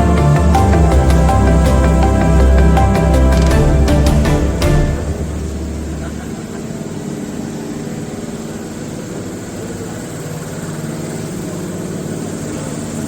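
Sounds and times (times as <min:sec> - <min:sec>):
industrial machine humming: 0:00.0 - 0:08.3.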